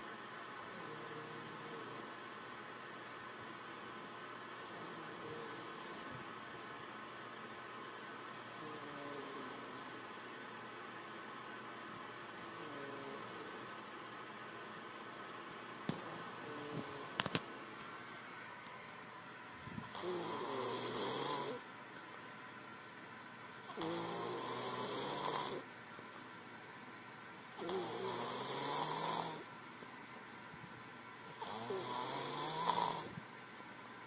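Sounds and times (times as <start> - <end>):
man snoring loudly: 4.7 - 6.1, 12.4 - 13.7, 19.8 - 21.7, 23.6 - 25.7, 27.5 - 29.5, 31.3 - 33.2.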